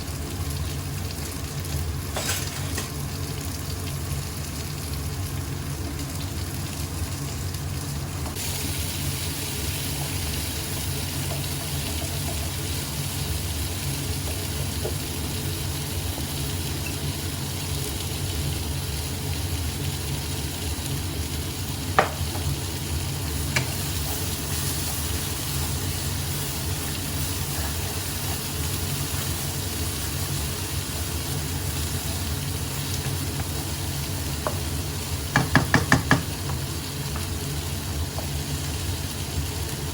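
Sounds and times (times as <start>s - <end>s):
food sizzling in a pan: 0.0s - 39.9s
utensil tapping a pan: 22.0s - 22.5s, 35.3s - 36.6s.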